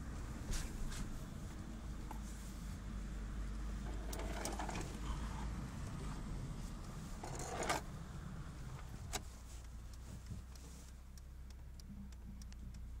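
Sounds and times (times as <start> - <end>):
petrol engine humming: 0.0 - 10.3.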